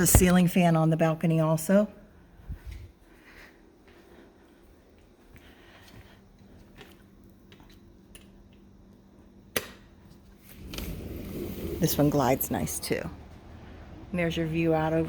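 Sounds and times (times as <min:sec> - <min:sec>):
faint steady hum: 0:00.0 - 0:15.0
sliding glass door rolling open: 0:10.4 - 0:15.0.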